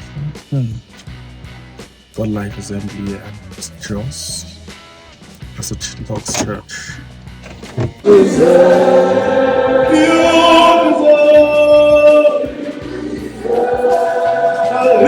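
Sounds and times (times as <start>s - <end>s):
congregation singing worship song: 7.8s - 15.0s.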